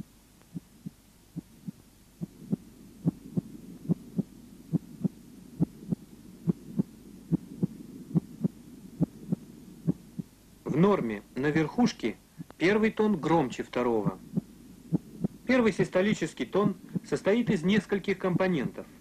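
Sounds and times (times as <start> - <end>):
low hiss: 0.0 - 19.0
heartbeat lub-dub: 0.5 - 10.4, 14.1 - 15.5, 16.9 - 17.2.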